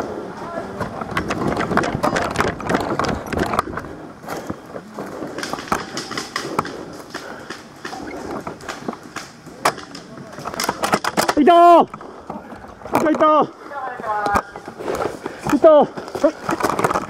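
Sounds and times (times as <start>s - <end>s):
quick footsteps on rough ground: 0.0s - 10.9s, 11.9s - 17.0s
gear rattling and knocking: 0.8s - 4.6s, 5.2s - 11.5s, 14.4s - 17.0s.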